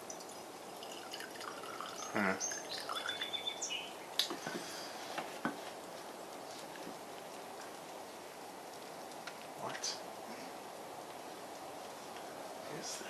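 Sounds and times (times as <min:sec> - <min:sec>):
fuel dripping into a cup: 0:00.0 - 0:03.6
pouring splash: 0:00.0 - 0:09.7.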